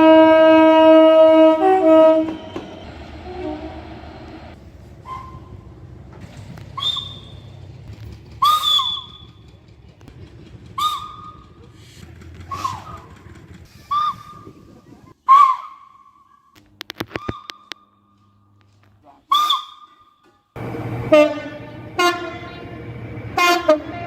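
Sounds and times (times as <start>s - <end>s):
high-pitched whistle toots: 6.8s - 7.5s, 8.4s - 9.3s, 13.8s - 14.6s, 15.2s - 16.2s, 19.3s - 20.1s.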